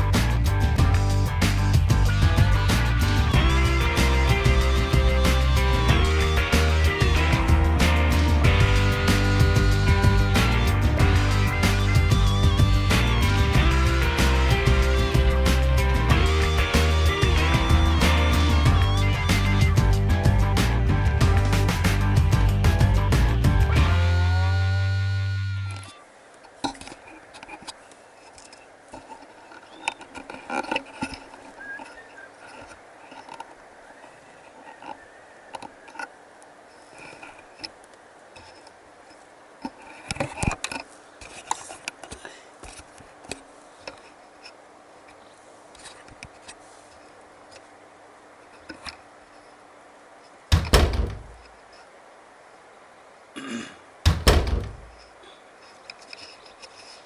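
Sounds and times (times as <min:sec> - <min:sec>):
deep thumps: 0:00.0 - 0:24.1, 0:50.5 - 0:51.4, 0:54.1 - 0:55.0
gear clicking and knocking: 0:50.5 - 0:51.4, 0:54.1 - 0:55.0.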